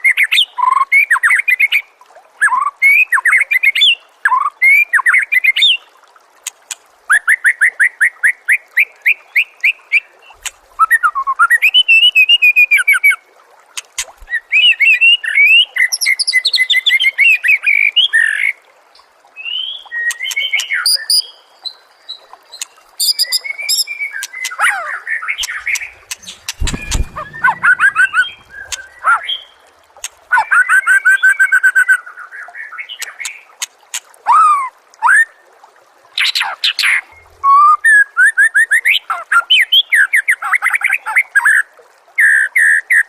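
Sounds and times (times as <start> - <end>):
songbird singing: 19.4 - 29.6
dull low thump: 25.5 - 29.1.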